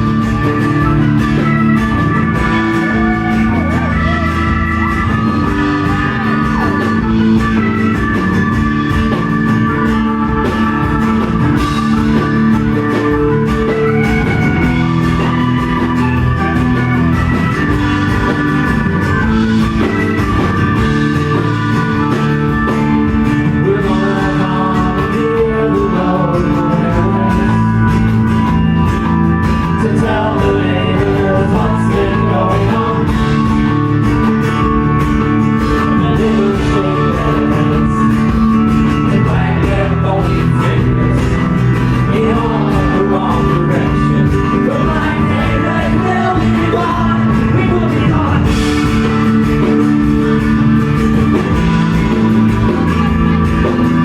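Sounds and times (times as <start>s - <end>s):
guitars: 0.0s - 54.0s
live rock band playing: 0.0s - 54.0s
person singing: 2.1s - 8.0s, 22.2s - 28.5s, 29.6s - 33.7s, 35.5s - 49.8s.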